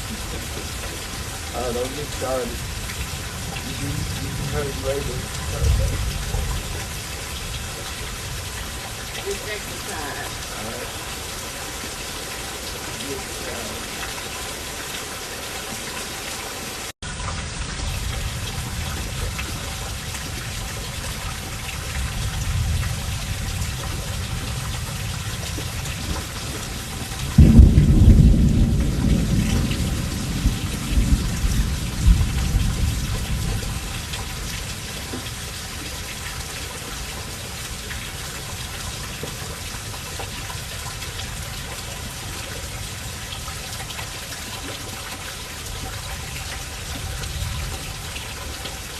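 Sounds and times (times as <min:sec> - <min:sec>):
thunder rolling: 0:00.0 - 0:08.8, 0:17.4 - 0:34.6
steady rain falling: 0:00.0 - 0:48.9.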